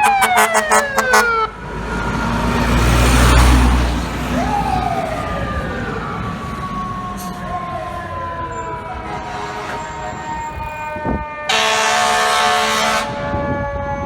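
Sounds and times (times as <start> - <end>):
loud air horn blast: 0.0 - 1.4, 8.9 - 13.6
fire truck siren wailing: 0.0 - 14.0.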